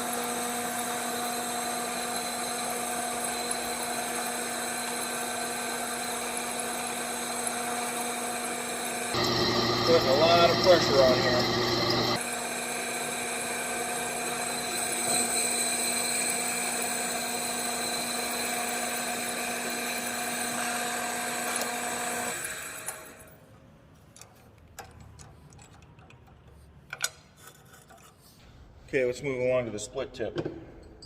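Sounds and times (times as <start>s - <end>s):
drill press whining: 0.0s - 23.4s.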